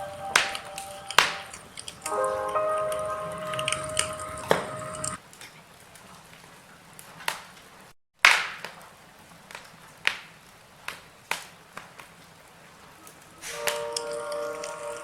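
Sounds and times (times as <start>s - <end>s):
logs crackling in fireplace: 0.0s - 7.6s, 13.4s - 15.0s
low fire hiss: 0.0s - 7.7s.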